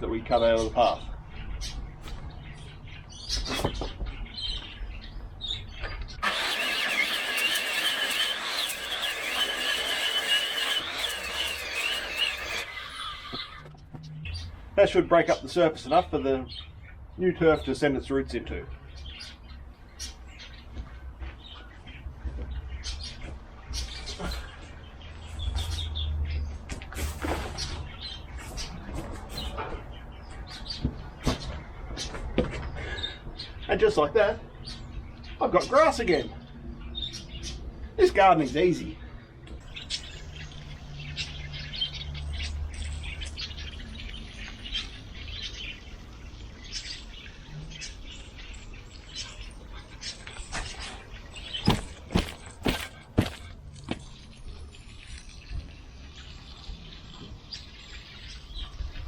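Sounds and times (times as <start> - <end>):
small birds chirping: 0.0 - 27.0, 27.6 - 59.0
angle grinder cutting soil: 6.2 - 13.7, 51.6 - 53.5.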